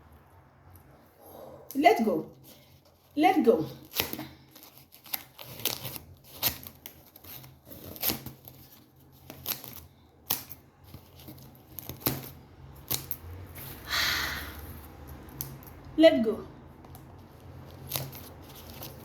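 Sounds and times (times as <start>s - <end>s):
packaging wrap ripping: 3.8s - 13.2s, 17.6s - 19.0s.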